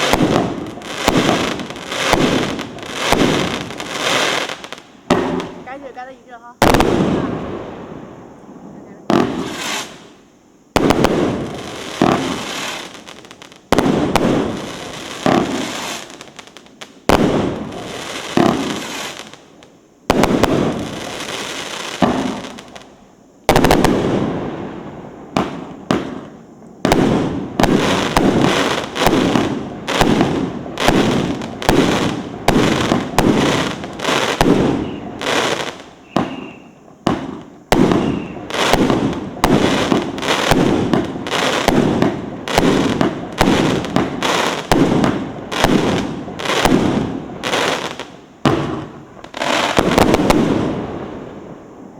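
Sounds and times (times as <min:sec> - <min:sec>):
firework bangs: 0:00.0 - 0:51.7.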